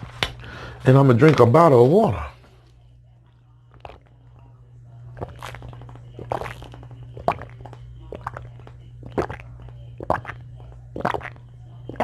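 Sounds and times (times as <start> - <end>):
steady low hum: 0.0 - 12.0
person gulping water: 5.2 - 12.0.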